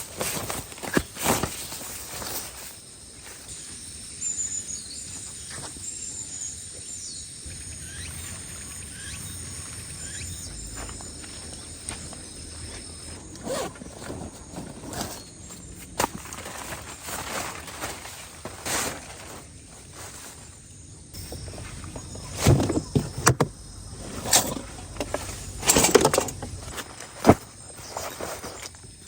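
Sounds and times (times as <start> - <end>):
faint outdoor background: 0.0 - 29.0
small birds chirping: 3.2 - 17.0, 19.6 - 26.8.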